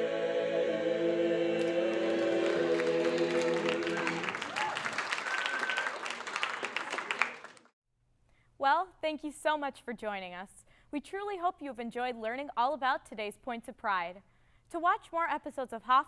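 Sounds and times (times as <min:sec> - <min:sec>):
male choir singing a chord: 0:00.0 - 0:04.6
audience applause and cheering: 0:01.6 - 0:07.7.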